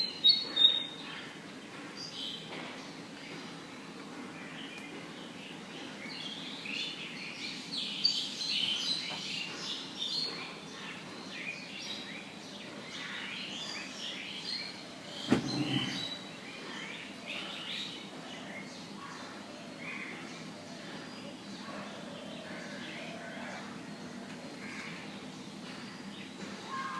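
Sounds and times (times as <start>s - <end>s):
small birds chirping: 0.0s - 26.9s
sudden knock: 15.3s - 16.1s.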